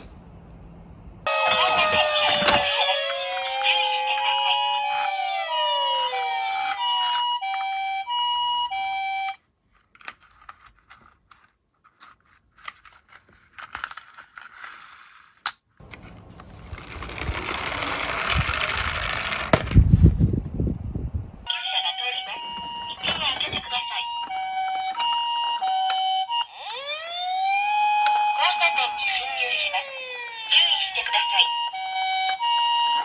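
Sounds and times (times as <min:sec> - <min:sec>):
two-tone ambulance siren: 0:01.2 - 0:09.4, 0:21.4 - 0:33.0
toy cars rolling down a slope: 0:13.6 - 0:20.0.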